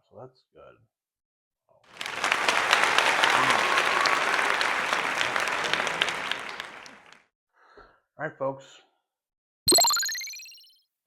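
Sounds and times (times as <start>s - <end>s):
crowd applause: 1.9s - 7.2s.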